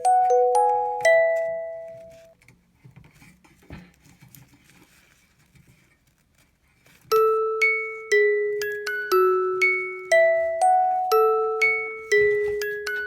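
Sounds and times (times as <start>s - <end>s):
bell-like mallet notes: 0.0s - 2.3s, 7.1s - 13.0s
faint small taps and rustles: 0.5s - 7.1s.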